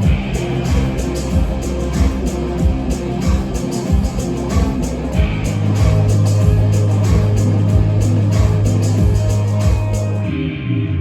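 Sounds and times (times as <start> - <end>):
steady drum beat: 0.0 - 10.3
bass guitar: 0.0 - 11.0
electric guitar chords: 0.0 - 11.0.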